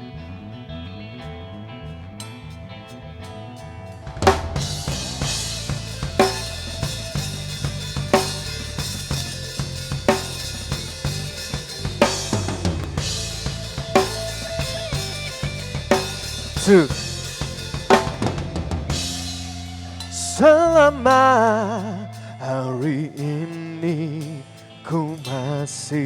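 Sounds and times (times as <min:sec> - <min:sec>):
bass guitar: 0:00.0 - 0:26.0
guitar: 0:00.0 - 0:26.0
drum kit beat: 0:04.1 - 0:22.2.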